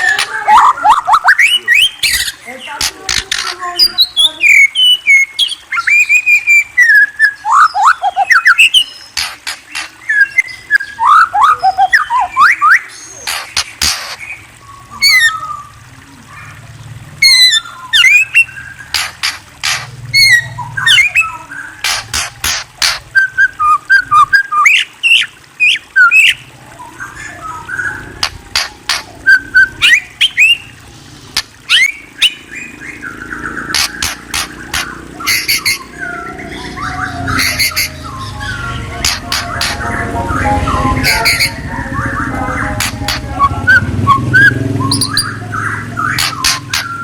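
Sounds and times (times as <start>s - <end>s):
songbird whistling and clicking: 0.0s - 14.4s, 17.2s - 26.4s, 28.2s - 30.7s, 31.4s - 32.4s, 33.7s - 35.9s, 37.3s - 39.9s, 41.0s - 41.6s, 42.7s - 47.0s.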